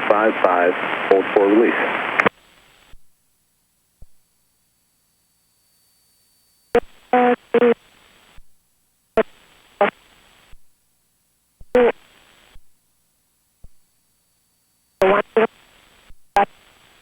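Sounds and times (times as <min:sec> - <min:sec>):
radio transmission voice: 0:00.0 - 0:02.3
radio click: 0:00.0 - 0:02.4
radio hiss: 0:00.0 - 0:03.0, 0:06.8 - 0:08.5, 0:09.2 - 0:10.6, 0:11.7 - 0:12.7, 0:15.0 - 0:17.0.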